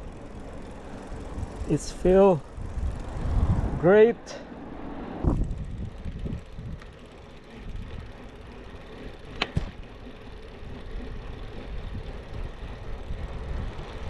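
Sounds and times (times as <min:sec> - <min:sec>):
bike tyres rumbling: 0:00.0 - 0:14.0
wind on microphone: 0:01.2 - 0:04.0, 0:05.2 - 0:07.0
sharp click: 0:09.3 - 0:09.7.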